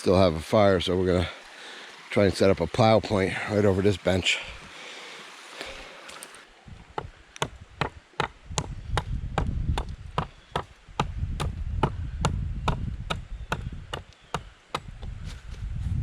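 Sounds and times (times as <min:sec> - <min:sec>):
sharp knocks: 0:07.0 - 0:14.9.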